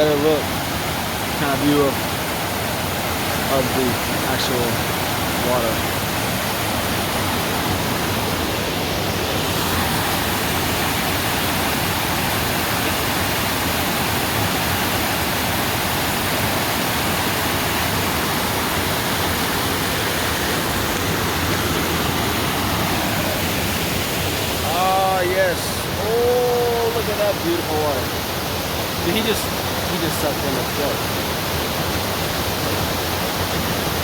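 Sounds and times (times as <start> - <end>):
waterfall pouring: 0.0 - 34.0.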